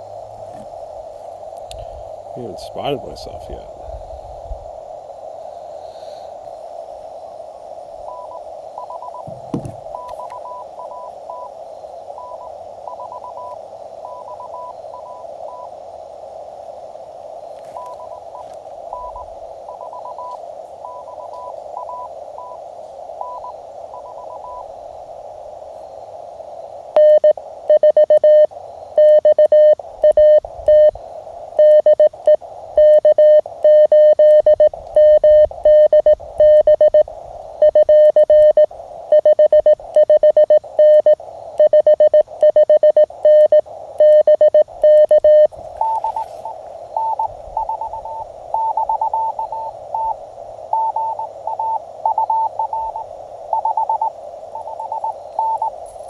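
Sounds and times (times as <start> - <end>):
faint high morse signal: 0.0 - 56.0
radio band hiss: 0.0 - 56.0
morse code tone: 8.1 - 11.5, 27.0 - 31.0, 31.6 - 55.8.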